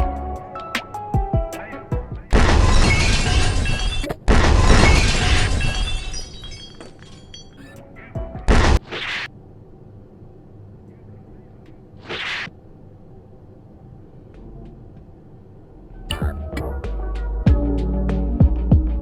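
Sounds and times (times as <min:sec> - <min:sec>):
glass shattering: 0:04.8 - 0:07.7.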